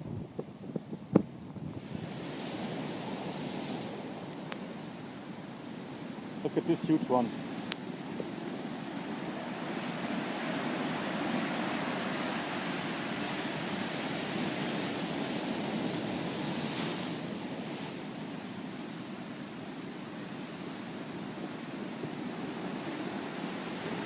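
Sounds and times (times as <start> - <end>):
large wave breaking: 5.8 - 24.0.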